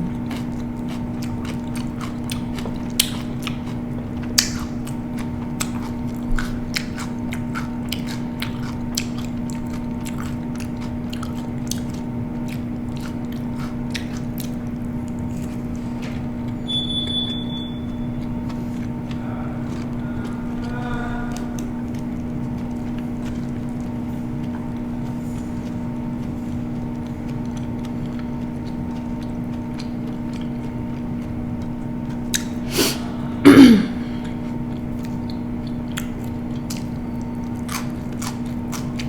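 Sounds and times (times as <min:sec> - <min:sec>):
chewing crunchy food: 0:00.0 - 0:39.0
steady low hum: 0:00.0 - 0:39.0
high beep: 0:16.7 - 0:18.1.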